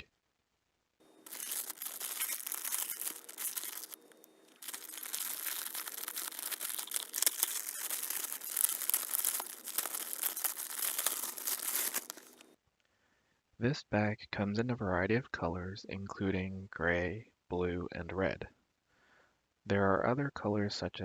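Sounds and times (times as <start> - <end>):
case crinkling and rustling: 1.3 - 12.4.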